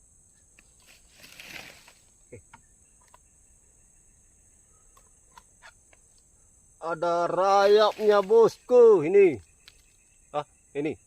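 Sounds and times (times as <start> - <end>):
insects droning: 0.0 - 11.0
brief rustle: 0.6 - 2.1.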